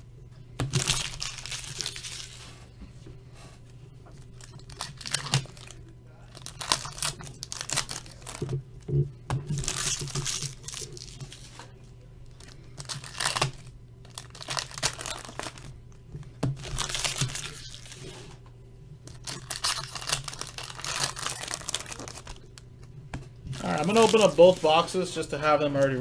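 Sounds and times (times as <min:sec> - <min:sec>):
plastic wrapping tearing: 0:00.6 - 0:02.4, 0:04.4 - 0:08.5, 0:09.5 - 0:11.5, 0:12.4 - 0:15.7, 0:16.6 - 0:18.2, 0:19.1 - 0:22.7, 0:23.5 - 0:24.9
cardboard tearing: 0:19.2 - 0:22.4.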